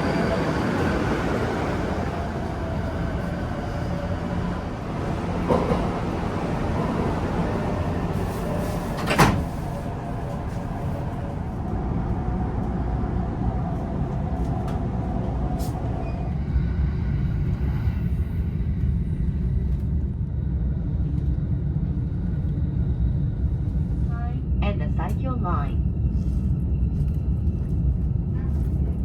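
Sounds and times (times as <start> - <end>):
train rumble: 0.0 - 29.0.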